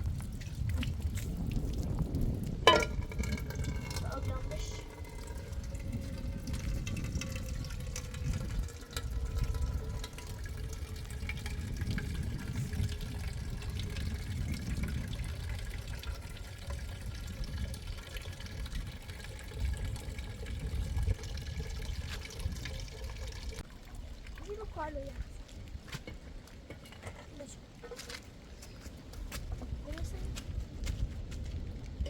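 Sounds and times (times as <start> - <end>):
gusting low rumble: 0.0 - 23.6
water dripping: 0.0 - 26.7
water splashing and trickling: 0.0 - 28.8.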